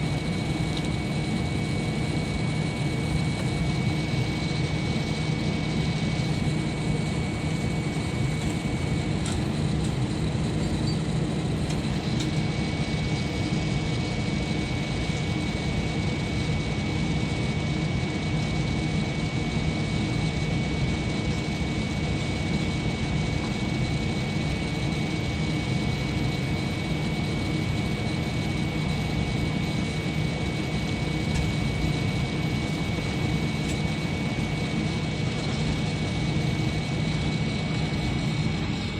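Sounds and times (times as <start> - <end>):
airliner cabin drone: 0.0 - 38.9
high whine: 20.1 - 38.9.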